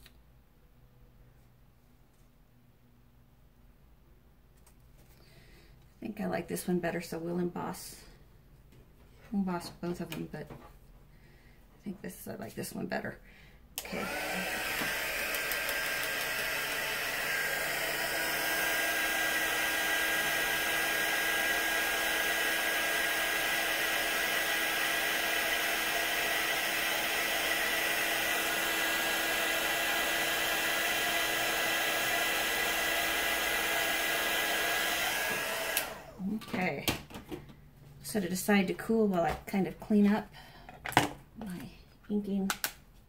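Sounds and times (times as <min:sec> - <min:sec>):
heat tool blowing hot air: 0:13.8 - 0:36.3.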